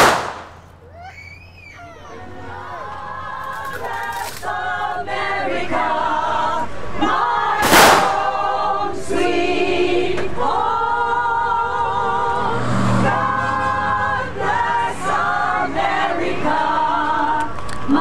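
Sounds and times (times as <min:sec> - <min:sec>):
loud rushing noise: 0:00.0 - 0:00.6, 0:07.5 - 0:08.9
audience singing along: 0:02.1 - 0:18.0
women's vocal group singing: 0:02.1 - 0:18.0.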